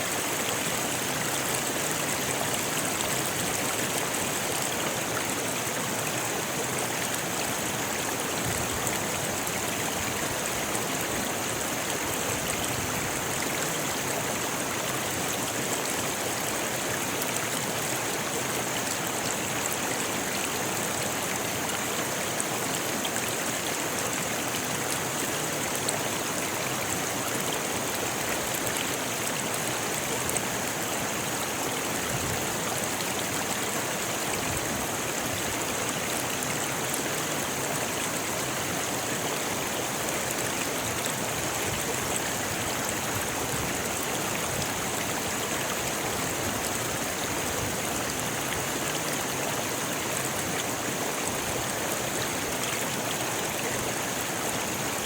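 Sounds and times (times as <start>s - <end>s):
river rushing over stones: 0.0s - 55.0s.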